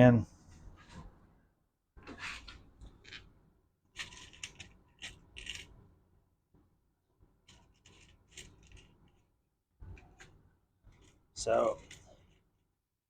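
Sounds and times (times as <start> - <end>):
hands rubbing and scraping wiring: 7.4 - 12.6.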